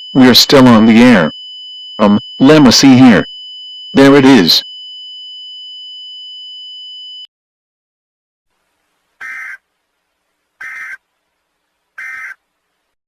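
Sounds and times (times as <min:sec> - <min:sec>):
steady electronic alert tone: 0:00.0 - 0:04.6.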